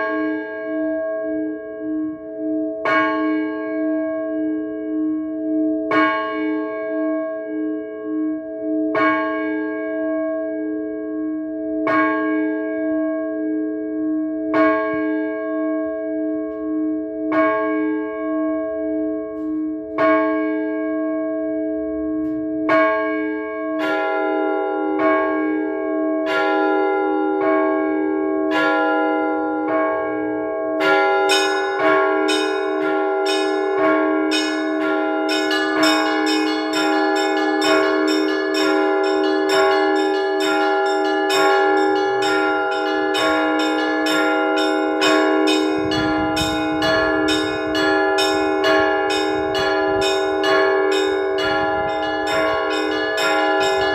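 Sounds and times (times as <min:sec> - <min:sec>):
deep church bells ringing: 0:00.0 - 0:53.9
small high bells chiming: 0:30.8 - 0:53.9.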